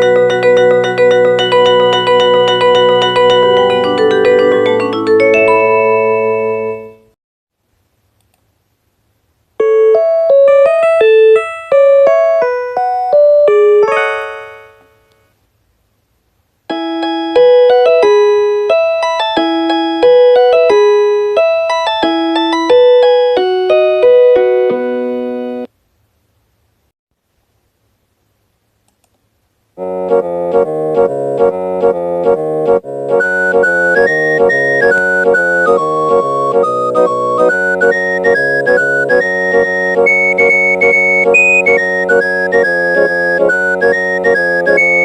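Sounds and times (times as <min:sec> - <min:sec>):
electric piano chime melody: 0:00.0 - 0:07.2, 0:09.6 - 0:15.1, 0:16.7 - 0:25.7.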